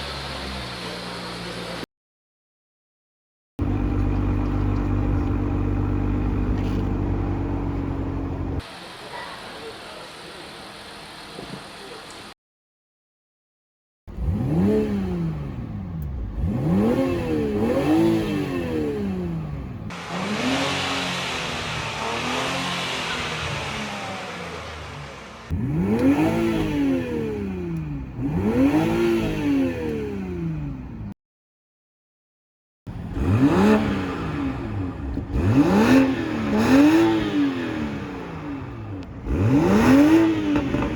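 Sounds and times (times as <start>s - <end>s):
sports car engine revving: 14.1s - 31.0s, 32.9s - 40.9s.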